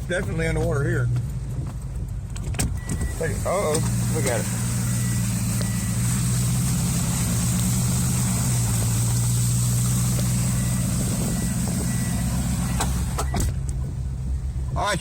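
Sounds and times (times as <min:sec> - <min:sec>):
vehicle engine running inside: 0:00.0 - 0:15.0
steady hiss: 0:03.1 - 0:13.2.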